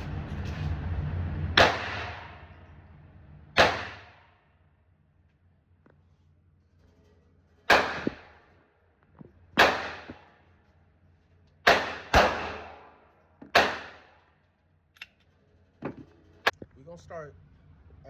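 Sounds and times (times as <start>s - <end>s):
echoing gunshots: 1.6s - 2.6s, 3.6s - 4.3s, 7.7s - 8.5s, 9.6s - 10.4s, 11.6s - 14.2s.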